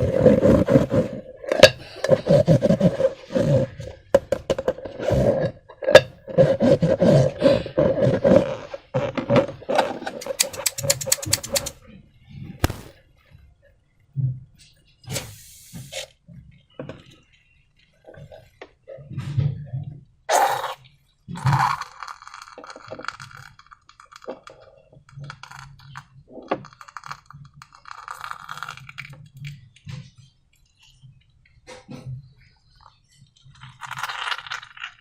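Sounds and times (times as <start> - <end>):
sharp clicks and taps: 10.2 - 11.7, 12.6 - 12.9.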